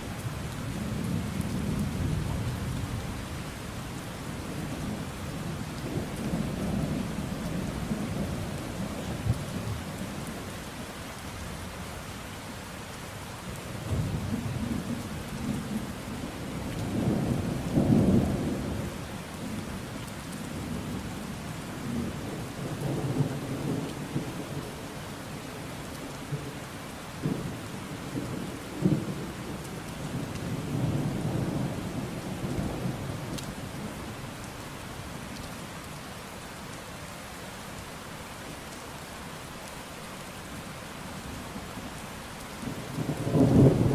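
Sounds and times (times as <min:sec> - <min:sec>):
heavy rain: 0:00.0 - 0:43.9
thunder rumbling: 0:27.2 - 0:34.1, 0:42.6 - 0:43.9.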